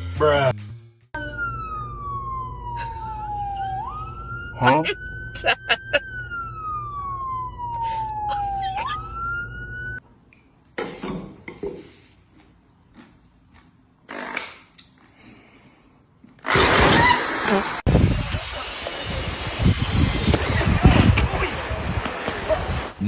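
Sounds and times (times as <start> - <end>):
emergency vehicle siren wailing: 1.2 - 10.0.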